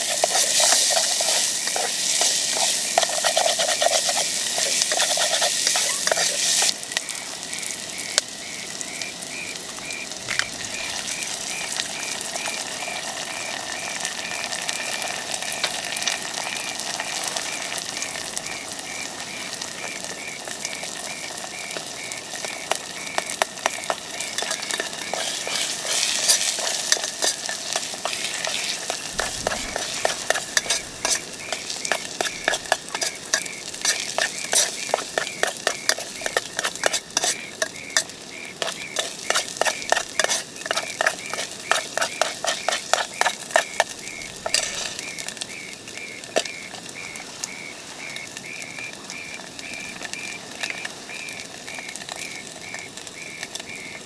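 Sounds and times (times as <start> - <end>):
utensil scraping a pan: 0.0 - 6.8, 23.2 - 45.7
food sizzling in a frying pan: 0.0 - 54.0.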